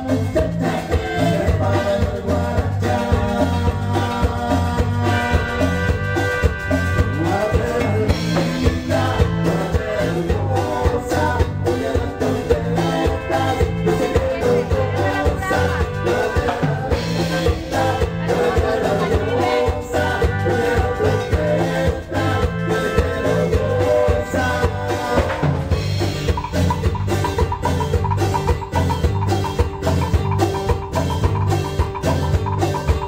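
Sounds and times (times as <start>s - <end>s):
band music: 0.0s - 33.0s
drum kit and bass beat: 0.0s - 33.0s.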